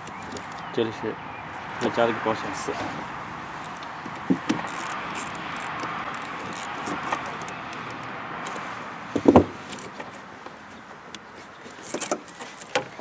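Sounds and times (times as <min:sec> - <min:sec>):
dull knocks: 0:09.2 - 0:09.6.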